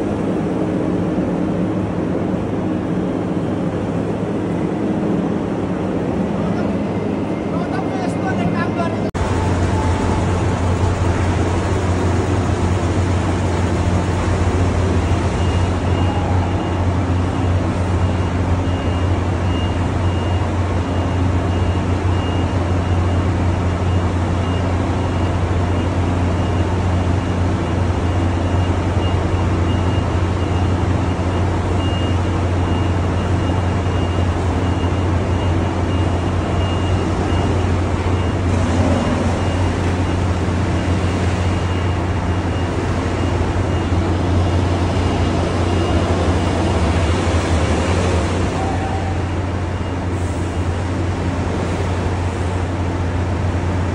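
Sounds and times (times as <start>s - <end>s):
construction machinery engine hum: 0.0s - 53.9s
high-pitched warning beep: 23.9s - 46.9s.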